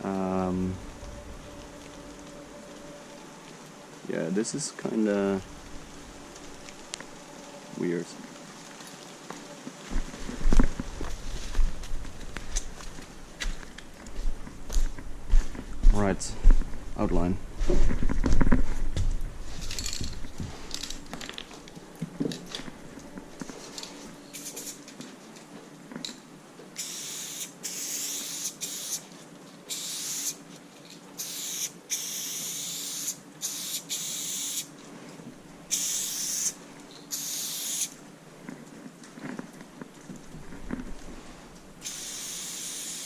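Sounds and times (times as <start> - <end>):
spray paint can hissing: 24.4 - 24.8, 26.8 - 29.0, 29.7 - 30.4, 31.2 - 34.7, 35.7 - 37.9, 41.8 - 43.0.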